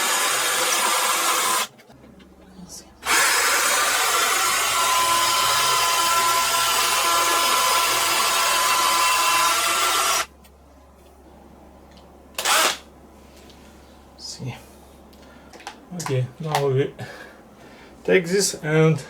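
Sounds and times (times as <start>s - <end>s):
power drill whining: 0.0s - 1.7s, 3.0s - 10.3s, 12.4s - 12.8s.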